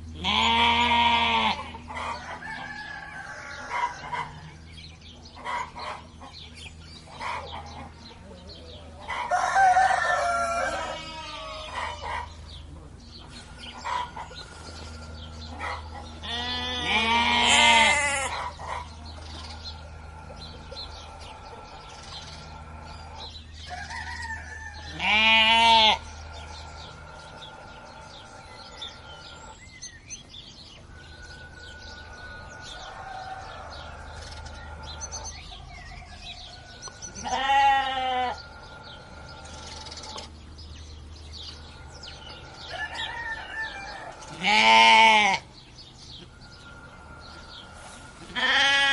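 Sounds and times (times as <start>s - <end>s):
low steady hum: 0.0s - 48.9s
livestock bleating: 0.2s - 1.8s, 10.4s - 12.1s, 16.2s - 18.4s, 24.8s - 26.7s, 37.1s - 39.4s, 44.3s - 45.5s, 48.2s - 48.9s.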